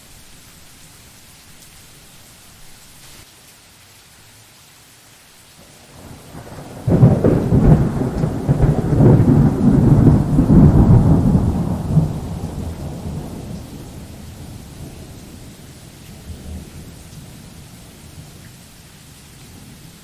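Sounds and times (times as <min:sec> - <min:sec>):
steady rain hissing: 0:00.0 - 0:20.0
thunder crack and rumble: 0:06.0 - 0:15.4.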